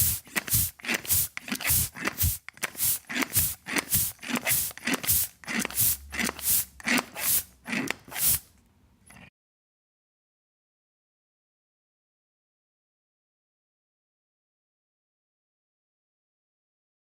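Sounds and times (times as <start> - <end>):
air pump strokes hissing: 0.0 - 8.5.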